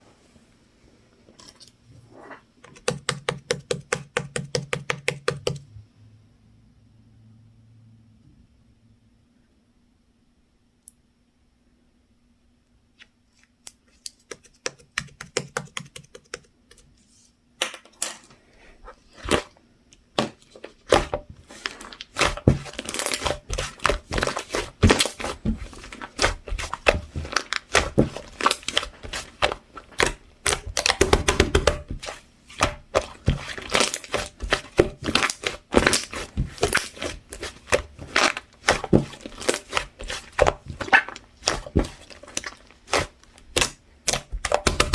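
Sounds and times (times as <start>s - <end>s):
slime crackling and popping: 21.6s - 44.9s.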